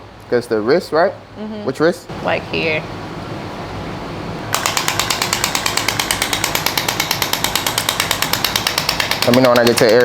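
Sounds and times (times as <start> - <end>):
rapid sharp clicks: 4.5 - 10.0.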